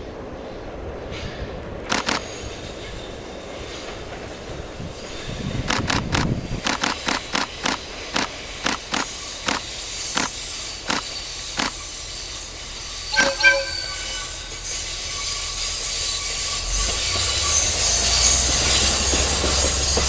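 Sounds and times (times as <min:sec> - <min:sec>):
train wheels clacking over rail joints: 0:01.1 - 0:13.7, 0:14.6 - 0:20.0
train horn blast: 0:13.1 - 0:14.8.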